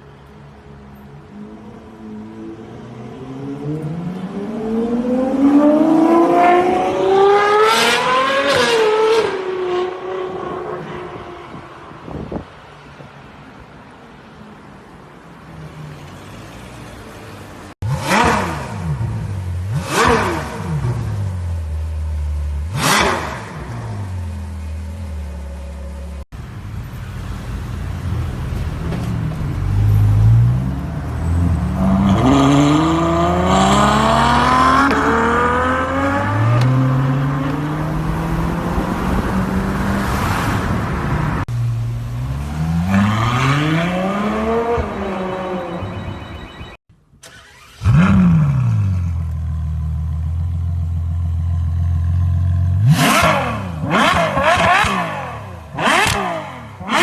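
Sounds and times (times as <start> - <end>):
sports car engine revving: 17.8 - 25.7, 29.6 - 40.2, 41.6 - 46.1, 47.4 - 57.0.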